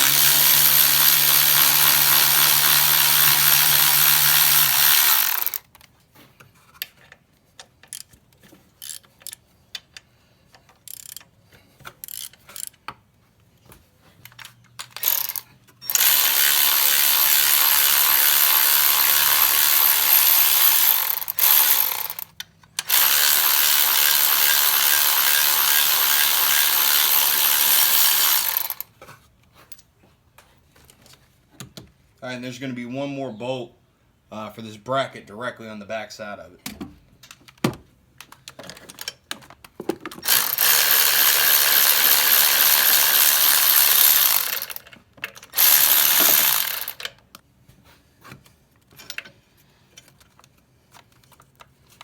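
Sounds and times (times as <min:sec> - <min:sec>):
power tool running: 0:00.0 - 0:05.6, 0:15.0 - 0:28.8, 0:40.2 - 0:44.8, 0:45.6 - 0:47.1.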